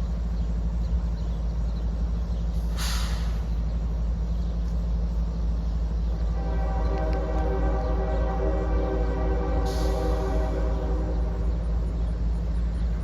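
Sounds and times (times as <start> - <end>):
diesel locomotive rumbling: 0.0 - 13.0
air hiss: 2.7 - 3.5.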